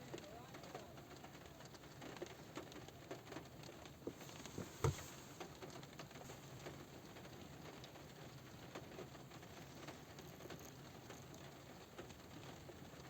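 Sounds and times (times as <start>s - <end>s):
raindrops tapping on car roof: 0.0s - 13.0s
faint hiss: 4.0s - 13.0s.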